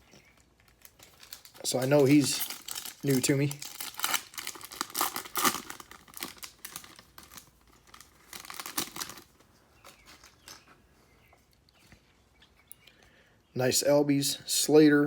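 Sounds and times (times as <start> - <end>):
plastic wrapper crinkling and tearing: 0.0 - 10.7.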